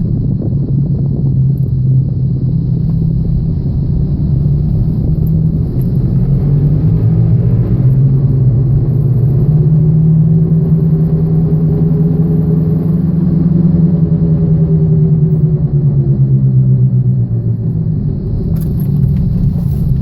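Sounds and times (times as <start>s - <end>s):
road noise: 0.0s - 20.0s
wheel bearing droning: 18.2s - 20.0s.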